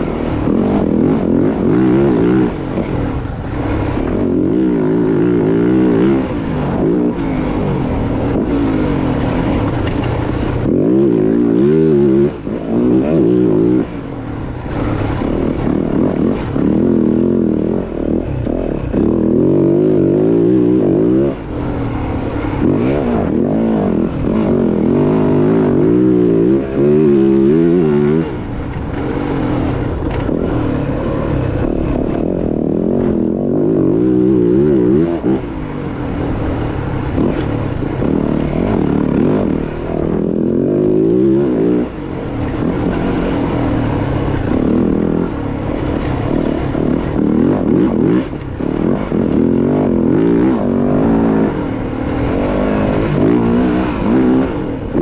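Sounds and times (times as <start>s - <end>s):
dirt bike engine revving: 0.0s - 55.0s.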